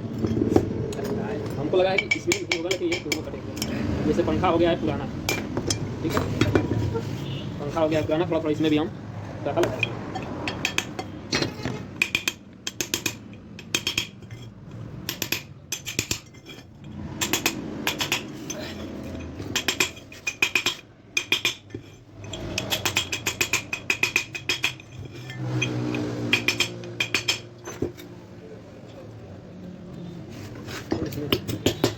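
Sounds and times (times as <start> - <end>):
hammer tapping metal punch: 0.3 - 3.8, 9.6 - 14.4, 15.0 - 16.4, 17.2 - 24.9, 26.2 - 28.1, 30.9 - 31.9.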